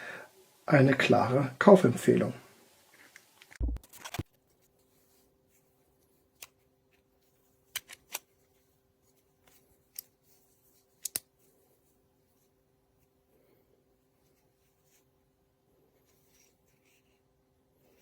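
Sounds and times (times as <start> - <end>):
faint steady hum: 0.0 - 3.8.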